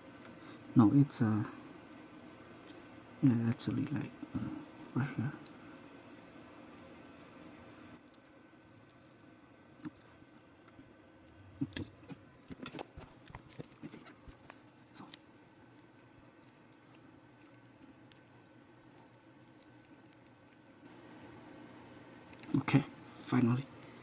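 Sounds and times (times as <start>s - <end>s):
small metal parts clicking and scraping: 1.6s - 3.0s, 4.6s - 5.9s, 8.0s - 15.2s, 15.9s - 20.9s.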